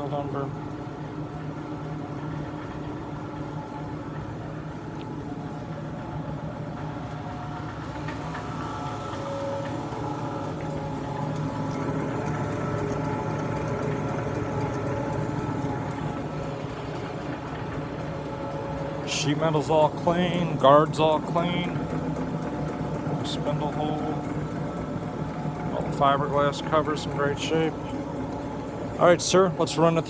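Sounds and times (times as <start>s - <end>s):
machine hum with steady tones: 0.0s - 30.0s.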